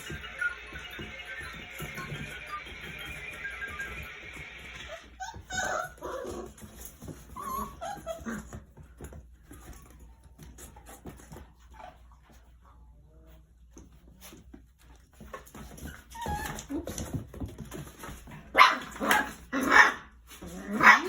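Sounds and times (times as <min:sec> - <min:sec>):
puppies whimpering and yipping: 0:00.0 - 0:08.7, 0:15.5 - 0:18.0.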